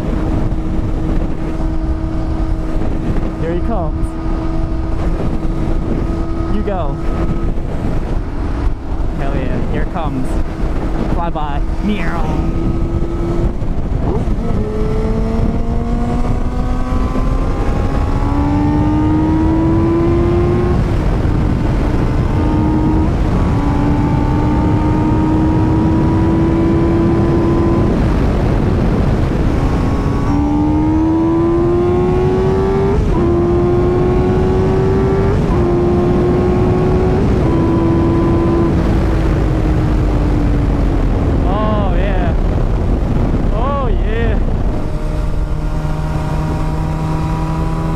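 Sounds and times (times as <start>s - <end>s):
heavy wind rush: 0.0s - 47.9s
motorcycle engine accelerating: 0.0s - 47.9s.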